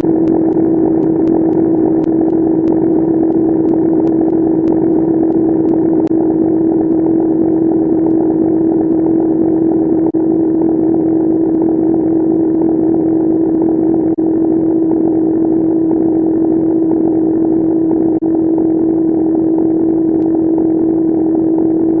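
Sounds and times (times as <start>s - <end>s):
sped-up phone ringtone buzzing: 0.0s - 22.0s.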